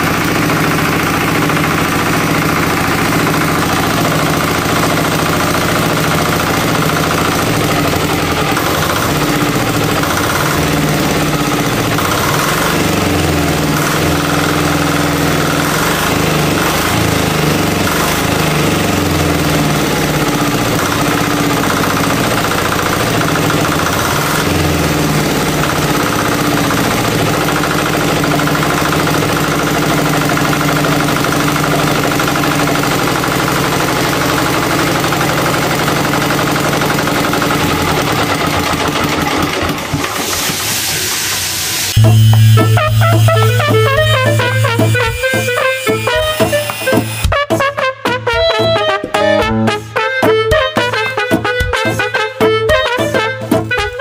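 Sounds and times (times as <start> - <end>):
diesel engine running: 0.0 - 40.3, 41.3 - 47.3.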